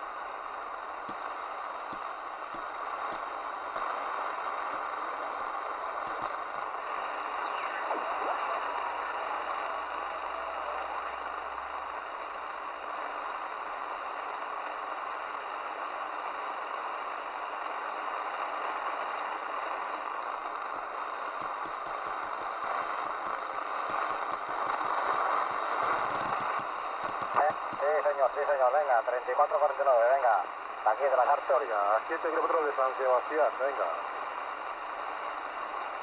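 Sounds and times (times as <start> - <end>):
radio static hiss: 0.0 - 36.0
faint ticks: 20.0 - 27.9.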